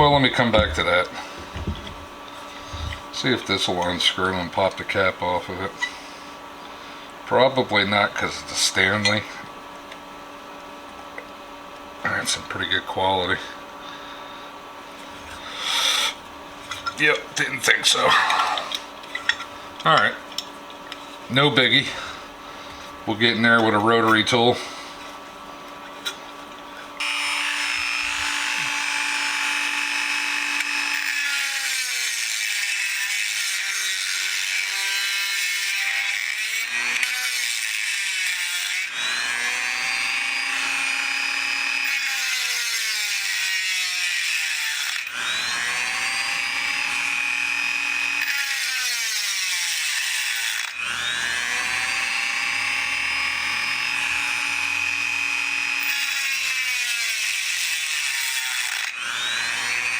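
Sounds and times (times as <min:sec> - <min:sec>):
rotary tool whining: 0:00.0 - 0:03.6, 0:27.0 - 0:59.9.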